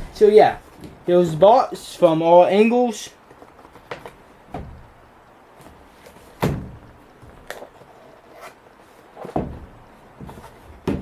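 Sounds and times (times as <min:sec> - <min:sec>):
cardboard box knocks and rubs: 0:09.2 - 0:11.0.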